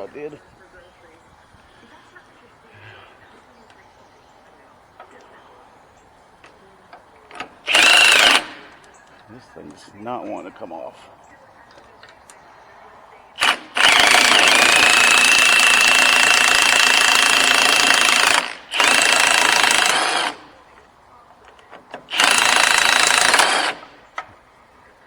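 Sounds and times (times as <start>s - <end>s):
impact wrench hammering: 13.4s - 20.4s.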